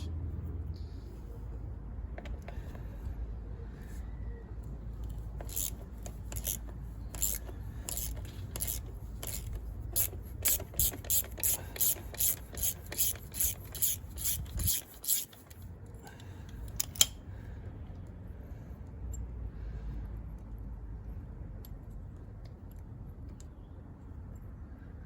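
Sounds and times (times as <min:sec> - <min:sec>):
ratchet wrench clicking: 0:05.0 - 0:15.7, 0:16.6 - 0:17.2.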